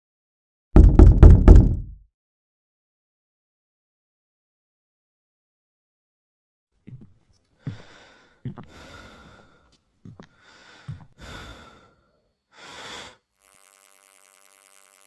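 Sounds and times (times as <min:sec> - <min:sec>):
person breathing and sighing: 0:07.6 - 0:13.2.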